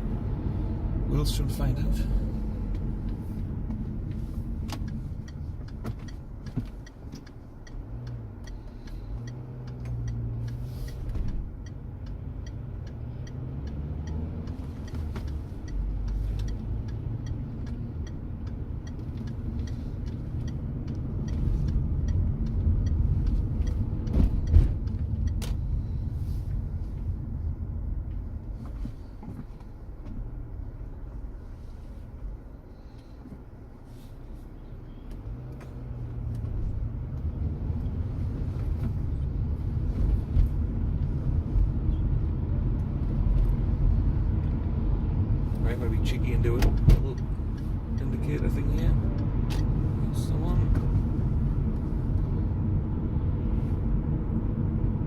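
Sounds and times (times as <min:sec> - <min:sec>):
car engine and tyre rumble: 0:00.0 - 0:55.0.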